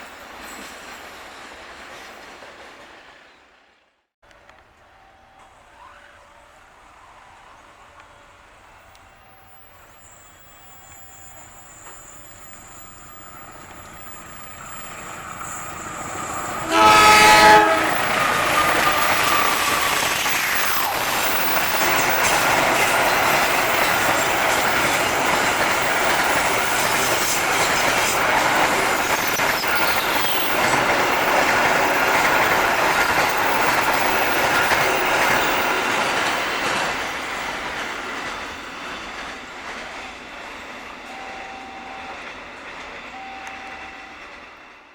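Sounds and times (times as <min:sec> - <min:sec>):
train wheels rumbling on rails: 0:04.3 - 0:44.9
train horn blast: 0:16.6 - 0:19.5, 0:41.1 - 0:42.2, 0:43.1 - 0:44.4.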